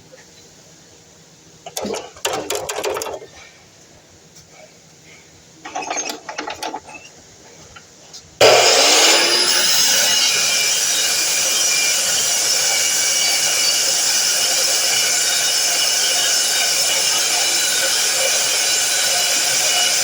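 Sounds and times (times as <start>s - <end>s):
clicks and knocks: 1.6s - 3.4s
miter saw motor whining: 8.4s - 20.0s.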